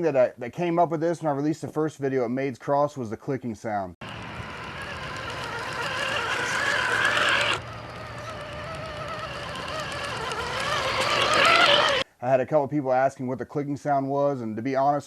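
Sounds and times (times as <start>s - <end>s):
electric motor and gears whining: 4.0s - 12.0s
fine clicking: 4.0s - 12.0s.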